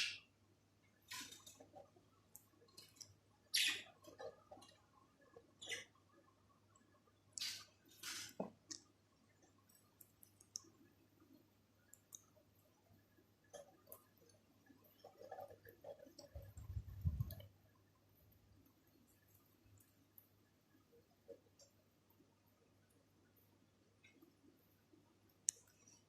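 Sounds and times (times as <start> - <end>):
birds pecking at food: 1.0 - 23.4.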